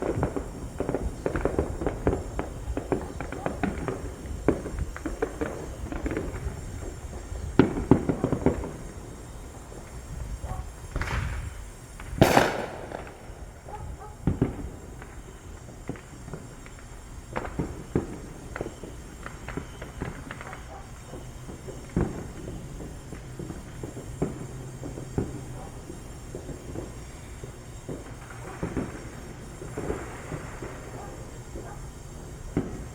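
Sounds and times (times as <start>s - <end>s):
fireworks and firecrackers popping: 0.0s - 32.9s
loud firework bang: 12.1s - 15.3s.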